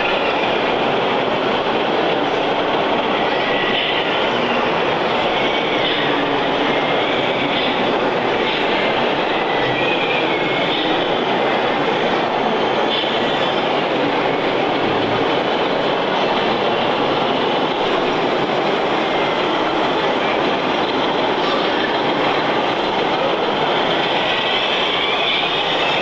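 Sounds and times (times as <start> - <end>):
faint high squeals: 23.8 - 26.0.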